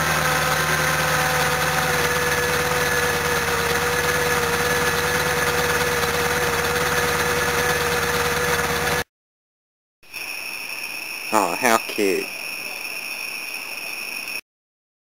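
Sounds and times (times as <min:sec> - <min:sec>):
van engine idling: 0:00.0 - 0:09.0.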